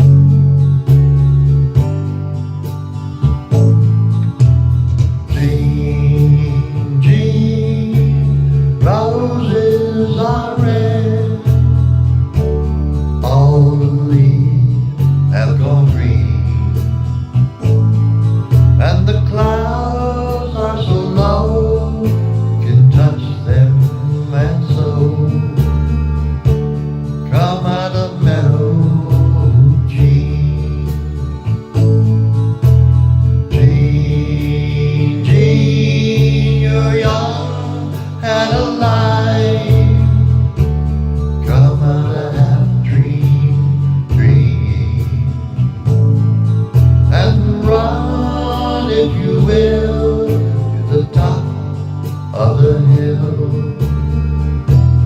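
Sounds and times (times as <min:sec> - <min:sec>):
bass line: 0:00.0 - 0:55.0
strummed guitar: 0:00.0 - 0:55.0
person singing with vibrato: 0:05.2 - 0:12.5, 0:13.2 - 0:16.8, 0:18.8 - 0:26.5, 0:27.2 - 0:32.0, 0:33.3 - 0:46.1, 0:47.0 - 0:54.8.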